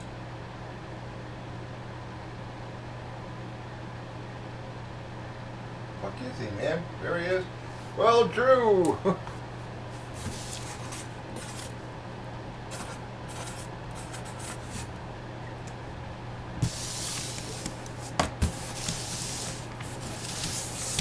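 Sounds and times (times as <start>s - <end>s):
packaging rustling and crackling: 16.6s - 21.0s.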